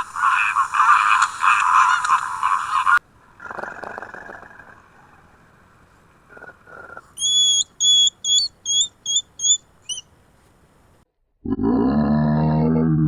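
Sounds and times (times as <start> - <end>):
faint noisy sound: 0.0 - 11.1
animal whistled call notes: 7.2 - 10.1.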